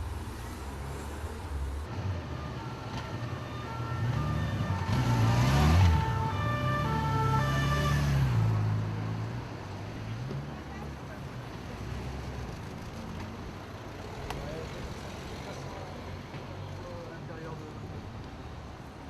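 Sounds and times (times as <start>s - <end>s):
vehicle engine: 0.0s - 17.6s
two-tone siren: 2.0s - 8.4s.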